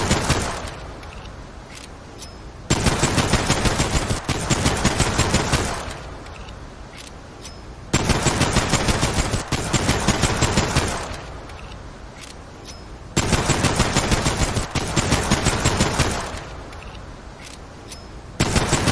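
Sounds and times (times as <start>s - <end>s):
rapid pistol gunshots: 0.0s - 0.8s, 2.7s - 6.1s, 7.9s - 11.3s, 13.2s - 16.5s, 18.4s - 18.9s.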